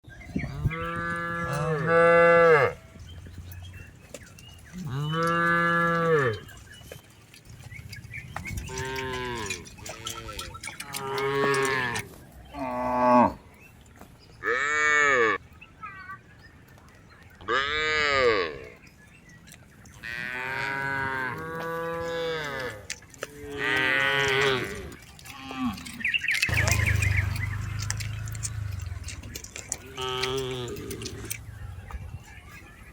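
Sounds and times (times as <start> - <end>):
cattle mooing: 0.5 - 2.8, 4.7 - 6.5, 8.6 - 12.0, 23.4 - 31.4.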